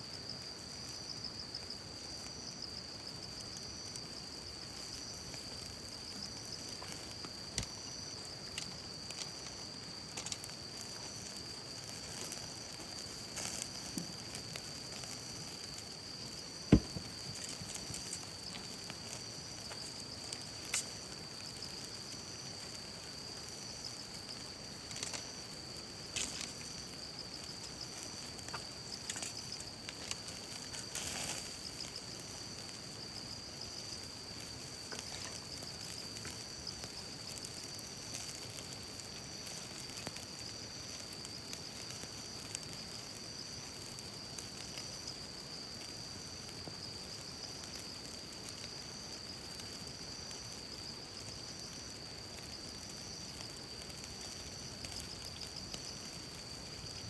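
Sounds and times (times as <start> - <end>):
high insect trill: 0.0 - 57.0
wood fire hissing: 0.0 - 57.0
fire crackling pops: 0.1 - 57.0.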